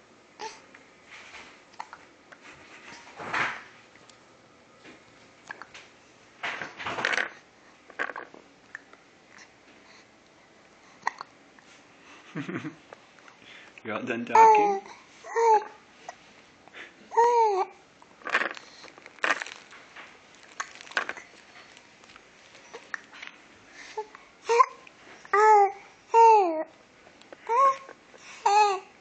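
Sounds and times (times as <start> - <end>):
baby hiccuping: 11.0 - 11.3
baby babbling: 14.3 - 15.8, 17.1 - 17.8, 24.0 - 26.7, 27.5 - 28.9.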